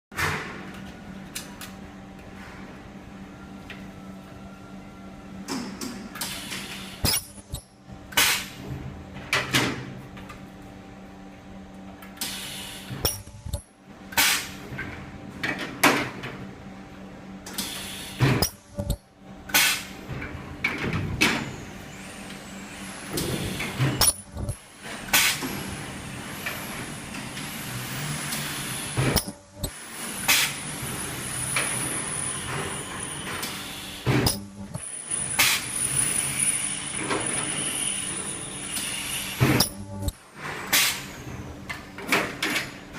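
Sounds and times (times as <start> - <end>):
steady machine hum: 0.1 - 42.9
pneumatic air hiss: 6.2 - 7.2, 12.2 - 13.0, 17.5 - 18.4, 21.4 - 24.1, 24.8 - 25.7, 28.3 - 34.4, 35.1 - 39.7, 40.6 - 41.2.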